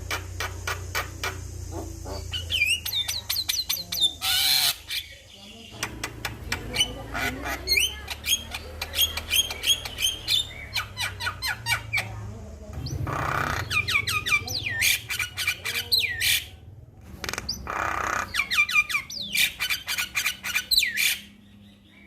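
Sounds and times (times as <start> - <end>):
harsh bird squawks: 0.0 - 5.1, 12.8 - 16.6, 17.3 - 21.3.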